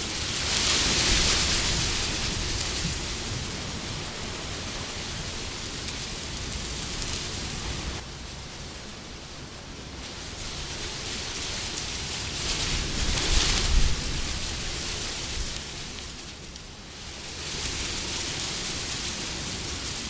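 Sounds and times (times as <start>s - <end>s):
wind blowing: 0.0s - 20.0s.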